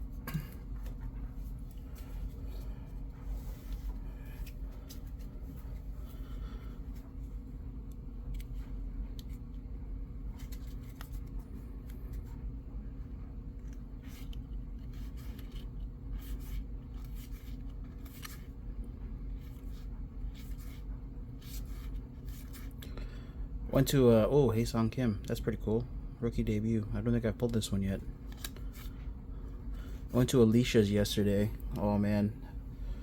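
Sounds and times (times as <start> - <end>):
clothes dryer humming: 0.0 - 10.3
trading cards scraping and snapping: 10.4 - 12.3, 13.6 - 18.5, 28.2 - 29.0.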